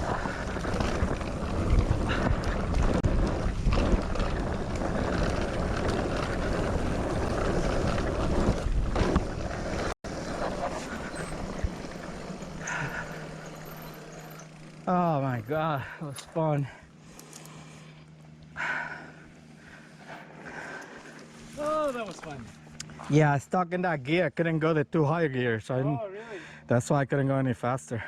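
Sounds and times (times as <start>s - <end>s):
wind buffeting microphone: 0.0s - 13.1s
tyres rattling over dirt trail: 0.0s - 17.7s, 18.6s - 22.8s
steady low hum: 0.0s - 25.8s.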